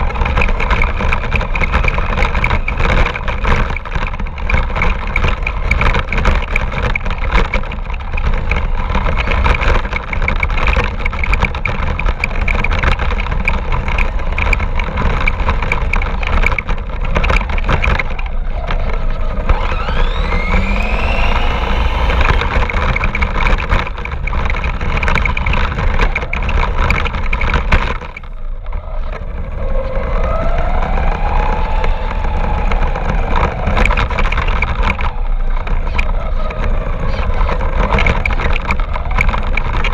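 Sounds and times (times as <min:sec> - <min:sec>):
rattling clatter over rough ground: 0:00.0 - 0:30.1, 0:32.5 - 0:39.9
electric motor whine: 0:17.4 - 0:26.5.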